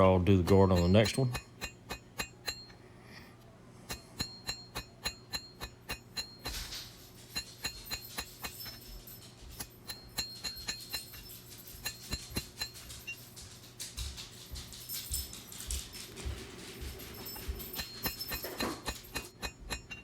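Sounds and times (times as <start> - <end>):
hammer striking steel on anvil: 0.4 - 2.7, 3.9 - 6.5, 9.6 - 11.2, 17.7 - 20.0.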